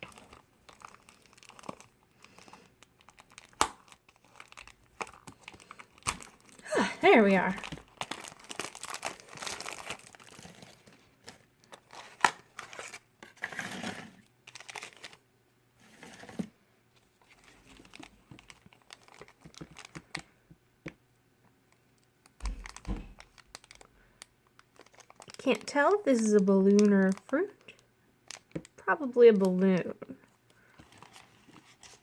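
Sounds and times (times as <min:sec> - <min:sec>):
plastic packaging crinkling and tearing: 0:00.0 - 0:15.2, 0:17.1 - 0:20.4, 0:21.7 - 0:32.0.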